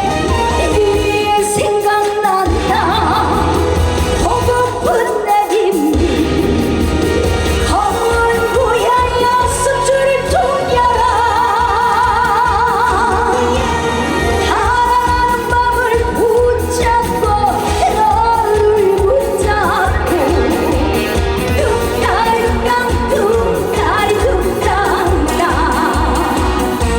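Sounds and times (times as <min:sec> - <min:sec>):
band accompaniment: 0:00.0 - 0:26.9
woman singing with vibrato: 0:00.4 - 0:06.9, 0:07.6 - 0:26.9.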